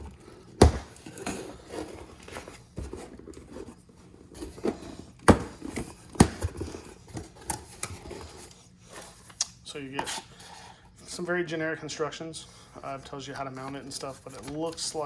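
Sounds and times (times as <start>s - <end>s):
cardboard rustling: 0.0s - 10.7s
sharp knocks on cardboard box: 0.6s - 1.4s, 5.2s - 6.7s.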